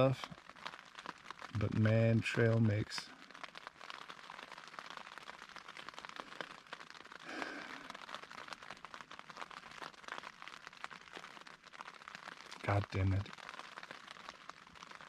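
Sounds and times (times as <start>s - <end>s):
rain pattering on a tent: 0.0s - 15.0s.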